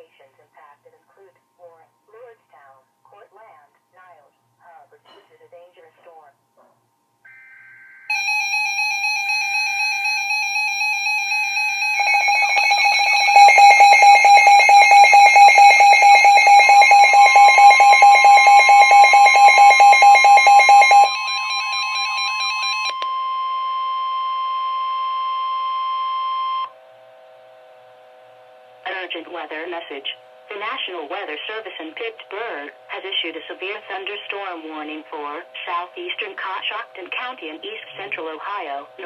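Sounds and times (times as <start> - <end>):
steady alarm tone: 7.3 - 26.8
faint data bursts: 11.7 - 21.2
rapidly pulsing electronic beep: 11.8 - 21.7.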